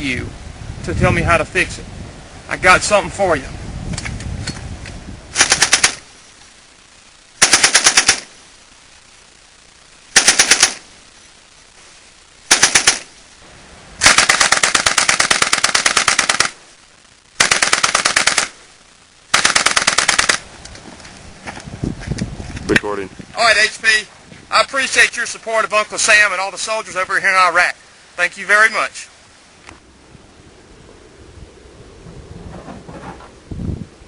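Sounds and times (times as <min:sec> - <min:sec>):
automatic gunfire bursts: 0:05.4 - 0:06.1, 0:07.4 - 0:08.4, 0:10.2 - 0:10.9, 0:12.5 - 0:13.1, 0:14.0 - 0:16.6, 0:17.4 - 0:18.6, 0:19.3 - 0:20.4.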